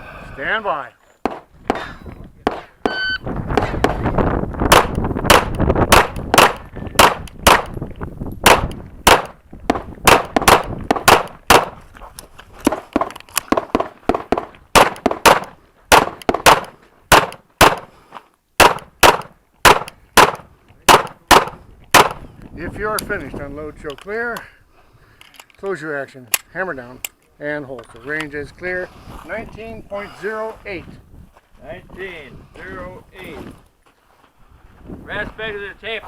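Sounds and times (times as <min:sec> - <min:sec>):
pistol shots: 0:04.7 - 0:07.8, 0:08.4 - 0:11.8, 0:13.5 - 0:17.9, 0:18.6 - 0:22.2.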